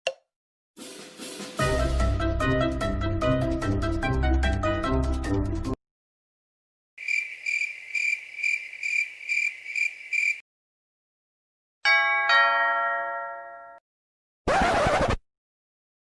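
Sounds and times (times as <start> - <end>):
cricket chirping: 7.0 - 10.4.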